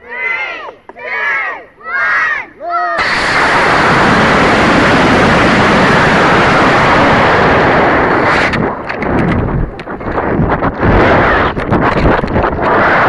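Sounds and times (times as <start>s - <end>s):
rocket motor rushing hiss: 3.0s - 9.0s
wind buffeting microphone: 3.1s - 13.0s.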